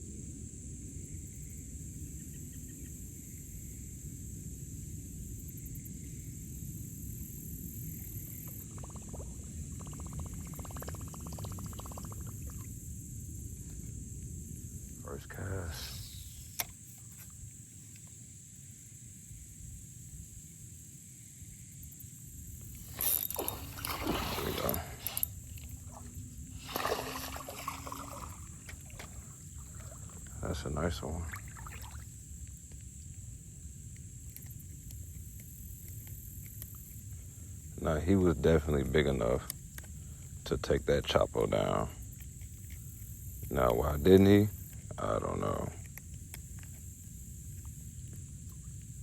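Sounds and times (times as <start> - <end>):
insects buzzing: 0.0 - 49.0
fishing reel ratcheting whirr: 22.9 - 24.0, 24.6 - 25.6.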